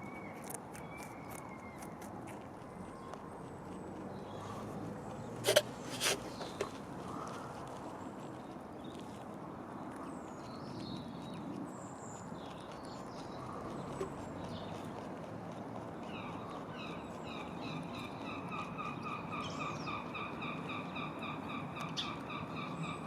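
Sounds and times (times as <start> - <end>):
rabbit chewing carrot: 0.0 - 23.0.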